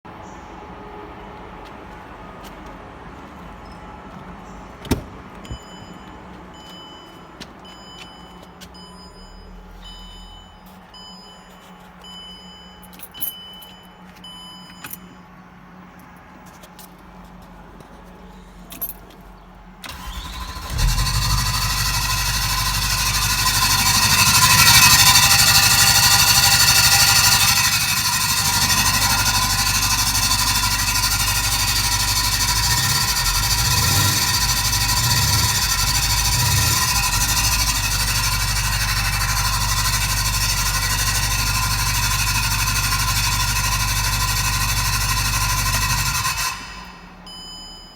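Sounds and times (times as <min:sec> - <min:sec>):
car engine starting and running: 0:04.8 - 0:06.0, 0:19.8 - 0:47.9
short electronic beeps: 0:05.4 - 0:15.2, 0:47.3 - 0:47.9.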